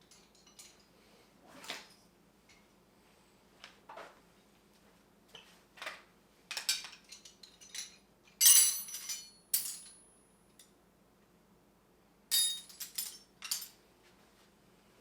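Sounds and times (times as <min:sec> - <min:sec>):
metal hand tools clinking: 0:06.6 - 0:10.0, 0:12.3 - 0:13.7.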